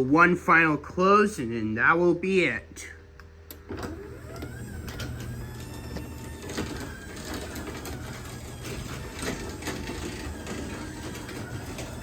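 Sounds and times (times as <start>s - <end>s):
garage door opener motor hum: 3.4s - 12.0s.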